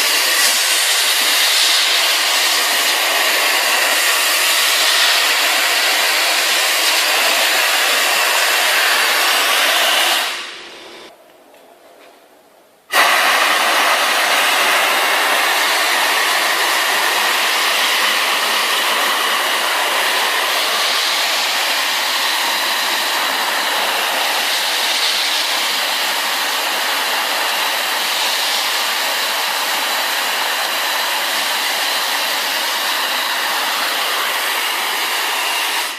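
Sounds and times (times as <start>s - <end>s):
industrial vacuum rushing hiss: 0.0s - 11.1s, 12.9s - 35.9s.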